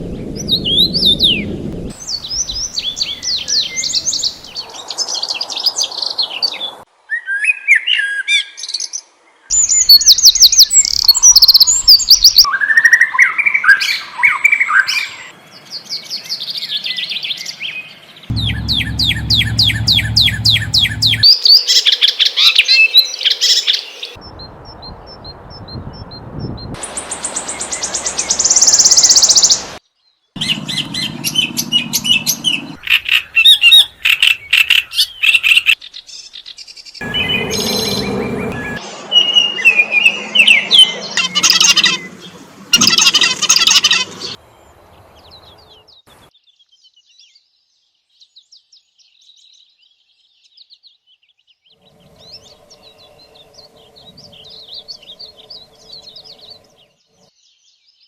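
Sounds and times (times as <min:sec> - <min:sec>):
songbirds singing and chirping: 0:00.0 - 0:26.8, 0:27.6 - 0:58.0
low rumble: 0:18.3 - 0:21.3, 0:37.0 - 0:38.8.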